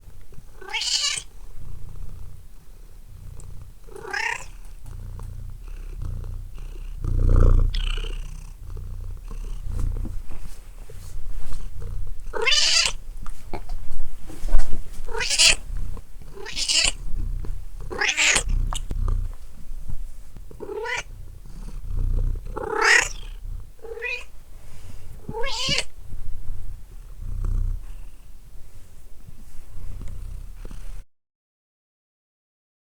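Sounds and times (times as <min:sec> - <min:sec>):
cat meowing: 0:00.6 - 0:01.3, 0:03.9 - 0:04.6, 0:07.7 - 0:08.3, 0:12.3 - 0:13.0, 0:15.1 - 0:15.6, 0:16.3 - 0:17.0, 0:17.9 - 0:18.9, 0:20.6 - 0:21.2, 0:22.6 - 0:24.3, 0:25.2 - 0:25.9.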